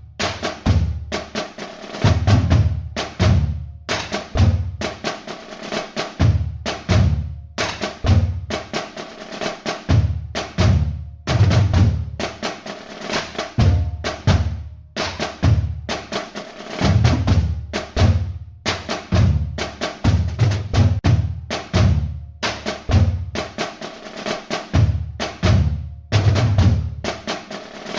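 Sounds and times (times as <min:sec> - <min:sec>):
bass drum thumps: 0:00.0 - 0:01.2, 0:02.0 - 0:04.9, 0:06.2 - 0:08.5, 0:09.9 - 0:12.4, 0:13.4 - 0:15.9, 0:16.8 - 0:23.5, 0:24.7 - 0:27.2
snare and cymbal beat: 0:00.0 - 0:27.9.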